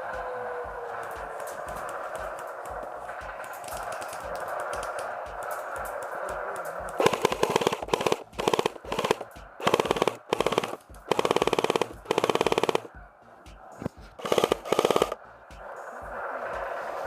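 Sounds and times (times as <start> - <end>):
airsoft guns firing bursts: 1.2 - 12.9, 14.2 - 15.2.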